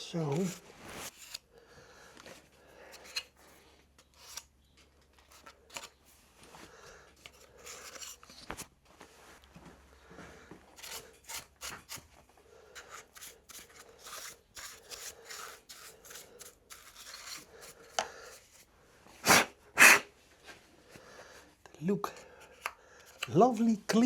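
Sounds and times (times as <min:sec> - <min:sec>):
small tool scraping plastic connector: 0:02.9 - 0:03.4, 0:05.2 - 0:06.0, 0:10.8 - 0:12.1, 0:12.8 - 0:18.6
short loud hissing bursts: 0:19.2 - 0:20.1.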